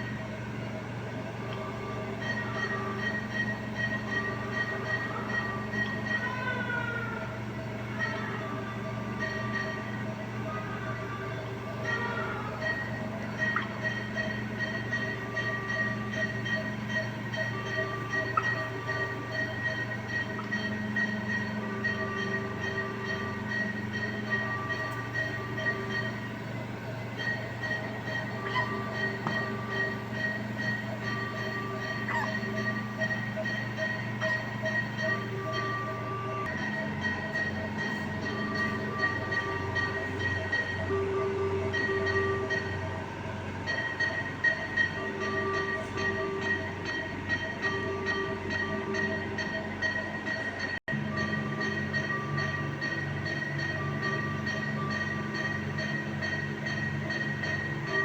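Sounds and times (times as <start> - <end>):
ventilator low hum: 0.0 - 43.6
thin high tone: 8.1 - 42.7
fast pulsing short tones: 12.7 - 36.2.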